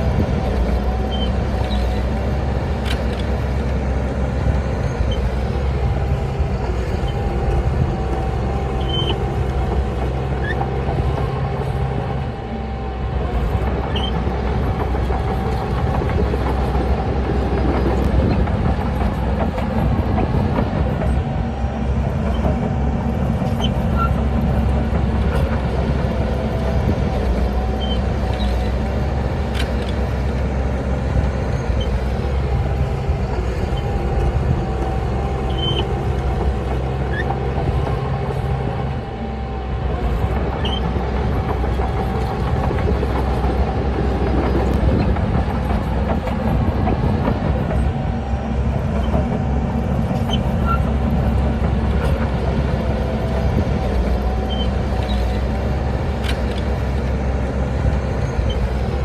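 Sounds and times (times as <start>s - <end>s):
diesel earthmoving machinery running: 0.0s - 59.0s
short high squeaks and clicks: 1.0s - 2.1s, 8.7s - 9.3s, 13.8s - 14.4s, 23.4s - 24.3s, 27.7s - 28.8s, 35.4s - 36.0s, 37.0s - 37.5s, 40.5s - 41.0s, 50.2s - 51.0s, 54.4s - 55.5s.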